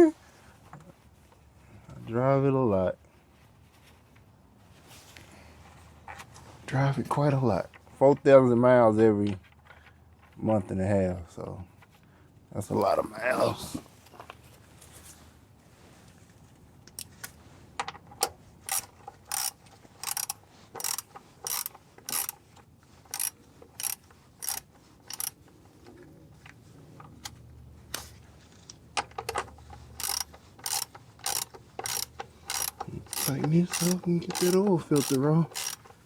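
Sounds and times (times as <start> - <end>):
ratchet wrench clicking: 18.7 - 22.4, 23.1 - 25.4, 29.1 - 36.0.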